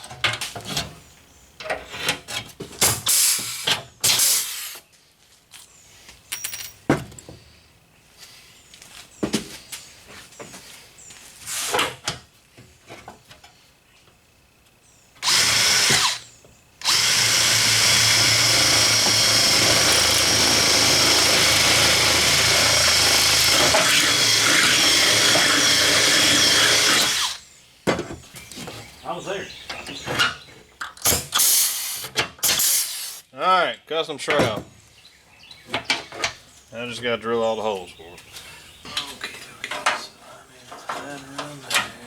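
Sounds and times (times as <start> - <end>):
power tool whining on sheet metal: 15.2 - 27.4.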